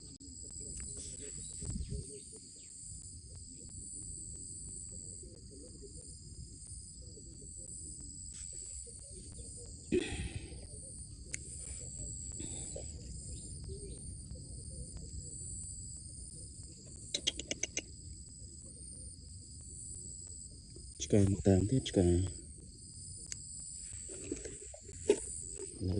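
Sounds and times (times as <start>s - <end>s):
high-pitched insect chorus: 0.0s - 25.9s
clicking calls: 17.1s - 17.9s.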